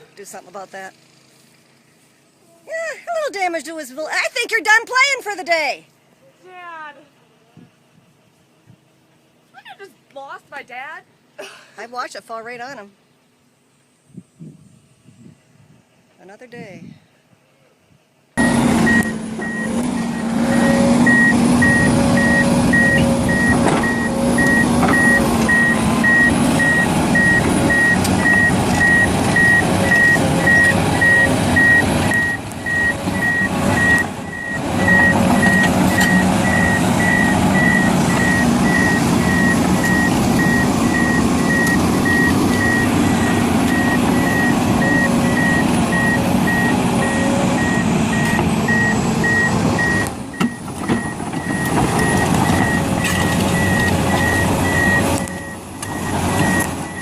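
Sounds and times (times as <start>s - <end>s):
diesel engine running: 0.0s - 16.9s, 18.3s - 57.0s
backup alarm beeping: 18.4s - 57.0s.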